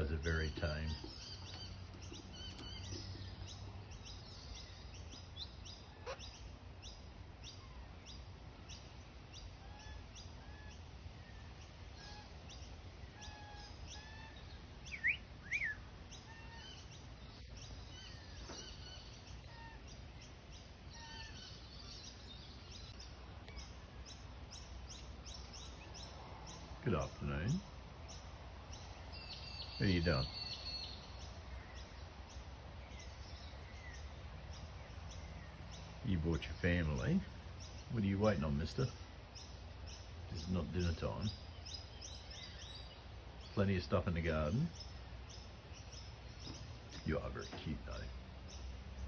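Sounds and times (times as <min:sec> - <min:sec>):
loud rising bird calls: 0:00.0 - 0:48.7
birds chirping: 0:00.0 - 0:49.0.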